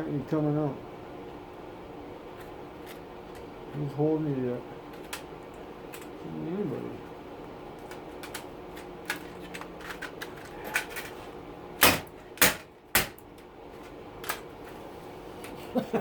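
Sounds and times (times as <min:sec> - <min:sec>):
loud sharp plastic knocks: 0:11.8 - 0:13.3.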